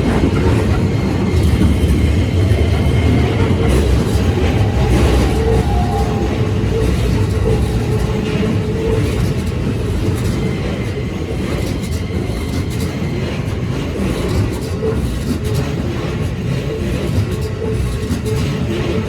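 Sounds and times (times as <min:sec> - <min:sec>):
crossing warning bell: 0:00.0 - 0:12.3
rail-joint clicks: 0:00.0 - 0:19.0
train wheels rumbling on rails: 0:00.0 - 0:19.0.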